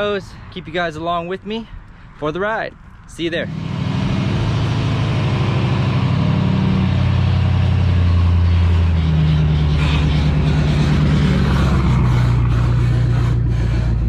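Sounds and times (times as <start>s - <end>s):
engine running steadily: 3.3s - 14.0s.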